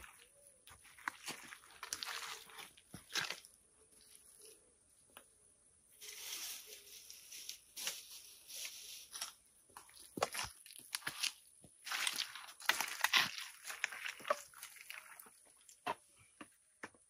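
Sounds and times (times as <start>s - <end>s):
rustling and crackling: 5.9s - 16.4s.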